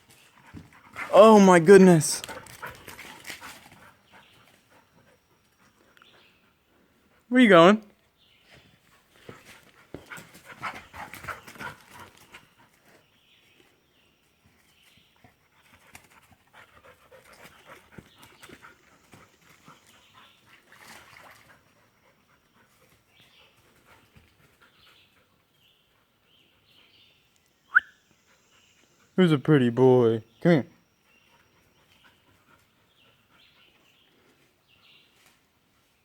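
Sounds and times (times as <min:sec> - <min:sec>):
dog panting: 0:02.2 - 0:07.3, 0:08.8 - 0:13.0, 0:15.2 - 0:20.4, 0:31.1 - 0:34.0.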